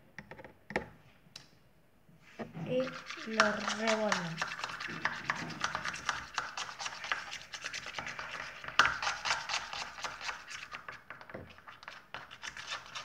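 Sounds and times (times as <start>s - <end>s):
spoon scraping container sides: 2.7s - 13.0s.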